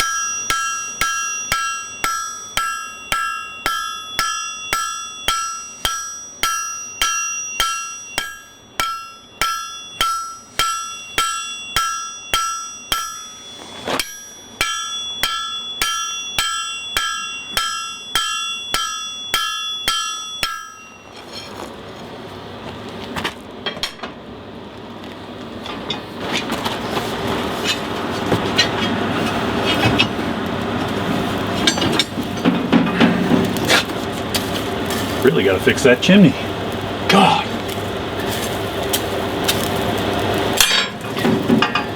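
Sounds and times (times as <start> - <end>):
hammer striking steel on anvil: 0.0 - 21.7, 27.6 - 30.2, 31.2 - 36.1, 40.6 - 41.9.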